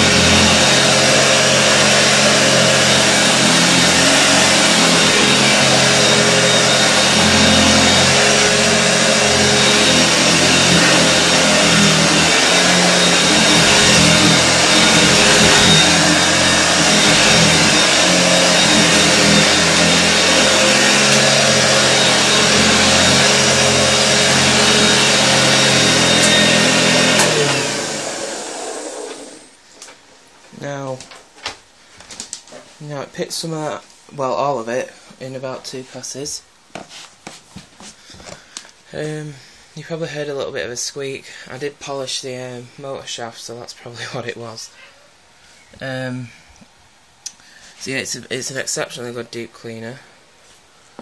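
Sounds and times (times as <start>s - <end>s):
upright vacuum cleaner running: 0.0s - 29.6s
vacuum motor winding down: 0.0s - 29.6s.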